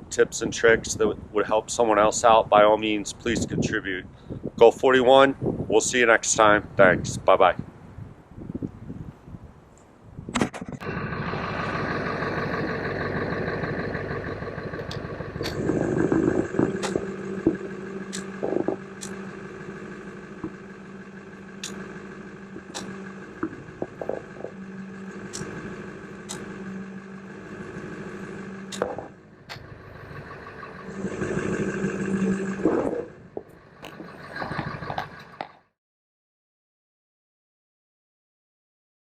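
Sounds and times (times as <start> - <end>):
vehicle engine idling: 10.8 - 35.6.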